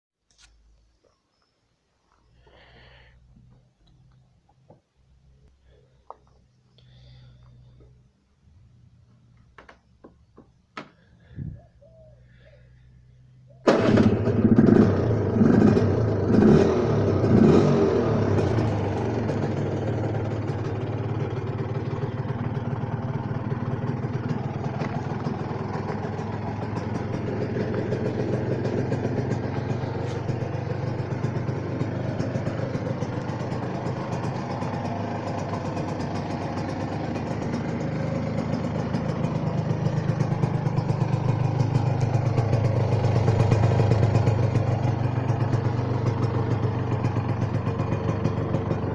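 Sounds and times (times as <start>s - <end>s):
motorcycle engine revving and idling: 13.4s - 48.9s.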